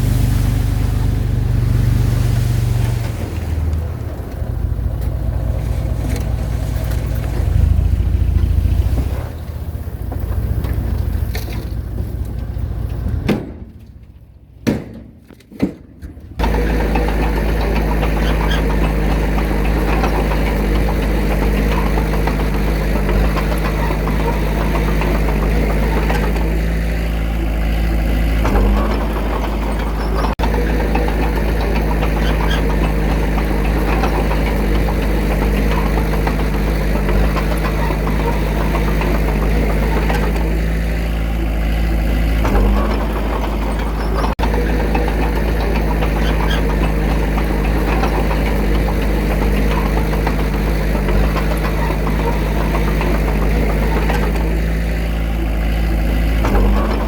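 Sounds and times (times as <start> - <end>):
diesel engine rumbling: 0.0 - 57.0.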